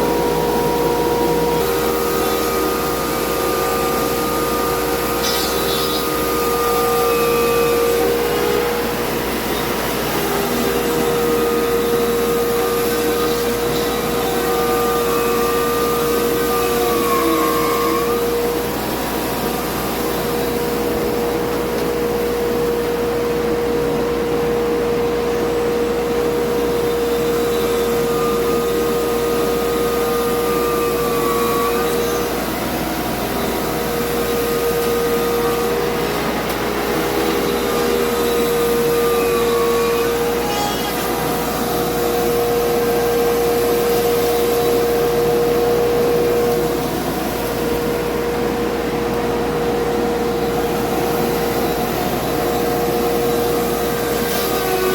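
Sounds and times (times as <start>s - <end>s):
sawmill machinery running: 0.0s - 54.9s.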